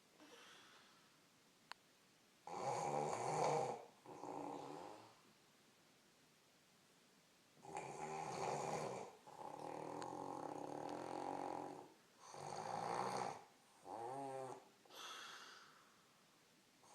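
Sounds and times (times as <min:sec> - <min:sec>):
woman snoring: 0:02.5 - 0:05.2, 0:07.6 - 0:15.6.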